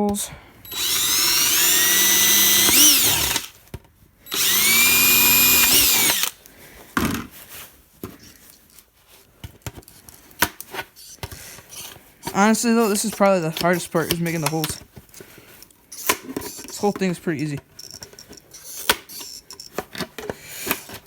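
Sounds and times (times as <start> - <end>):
power drill motor: 0.6 - 3.6, 4.3 - 6.4, 11.7 - 14.8.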